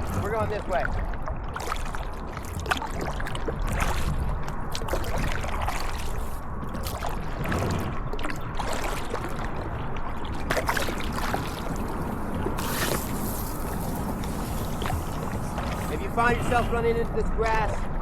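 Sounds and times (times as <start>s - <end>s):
kayak paddles splashing: 0.0s - 17.6s
steady low rumble: 0.0s - 18.0s.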